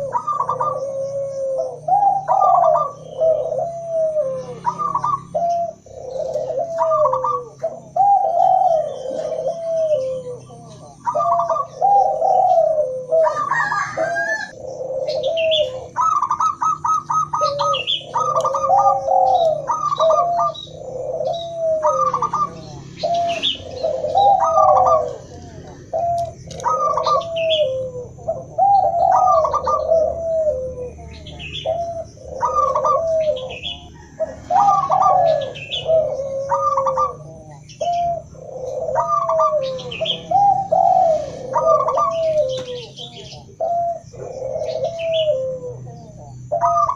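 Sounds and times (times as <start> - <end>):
doves cooing: 0.0 - 46.9.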